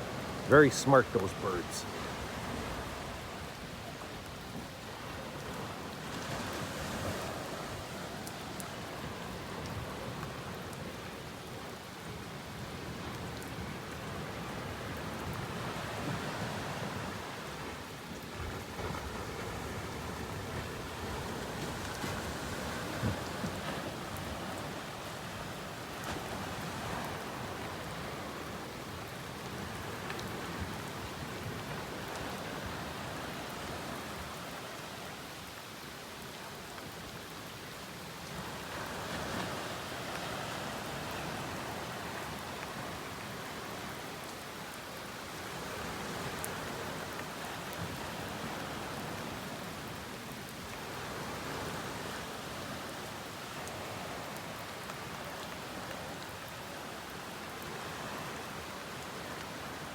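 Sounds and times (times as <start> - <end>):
steady rain hiss: 0.0 - 59.9
faint raindrop ticks: 8.2 - 16.4, 28.4 - 32.8.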